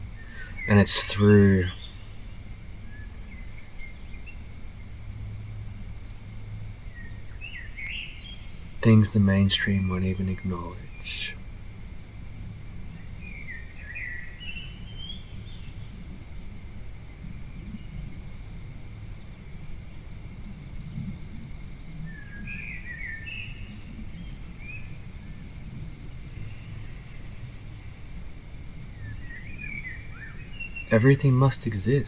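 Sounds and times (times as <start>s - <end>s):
wild birds chirping: 0.0s - 32.0s
bird trill: 0.1s - 4.4s.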